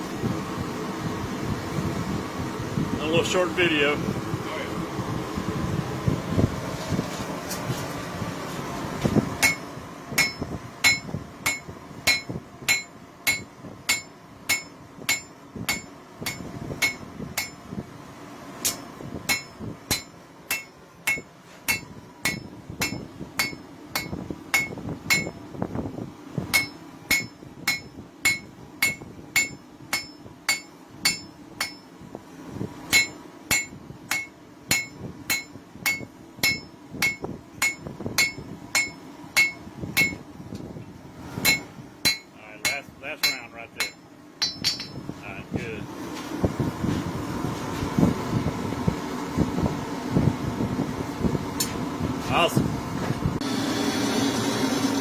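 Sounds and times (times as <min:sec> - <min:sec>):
hammer striking metal on anvil: 0:09.4 - 0:17.7, 0:18.6 - 0:25.4, 0:26.5 - 0:31.9, 0:32.9 - 0:40.2, 0:41.4 - 0:45.0.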